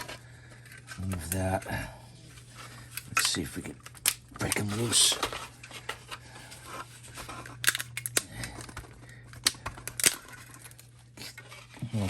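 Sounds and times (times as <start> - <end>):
steady low hum: 0.0 - 12.0
plastic parts cracking apart: 2.8 - 6.0, 7.1 - 11.7.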